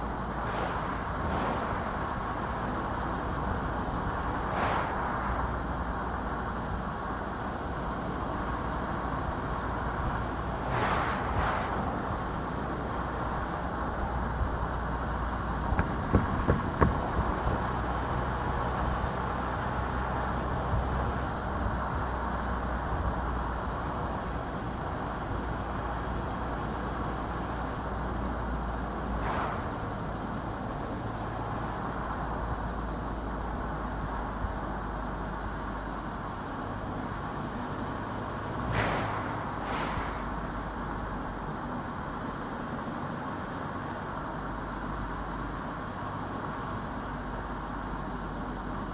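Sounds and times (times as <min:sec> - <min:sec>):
car engine and tyres rumbling: 0:00.0 - 0:48.9
rushing whoosh: 0:00.3 - 0:02.9, 0:04.3 - 0:05.8, 0:10.5 - 0:13.0, 0:29.2 - 0:30.2, 0:38.6 - 0:40.7.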